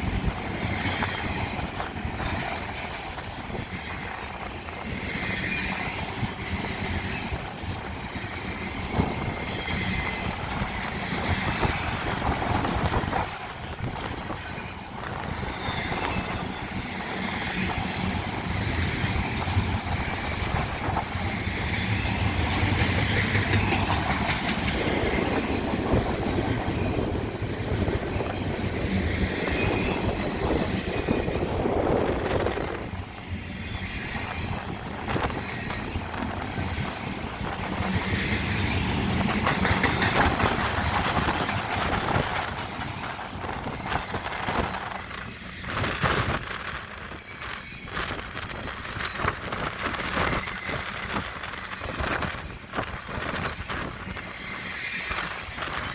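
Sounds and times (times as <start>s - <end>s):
train wheels rumbling on rails: 0.0s - 55.9s
high wheel squeal: 19.1s - 23.5s.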